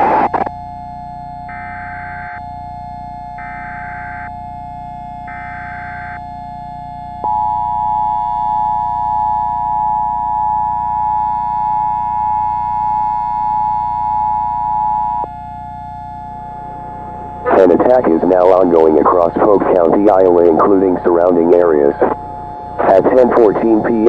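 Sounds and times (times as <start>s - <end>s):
two-tone attention signal: 7.3s - 15.3s
synthesizer drone: 14.5s - 24.0s.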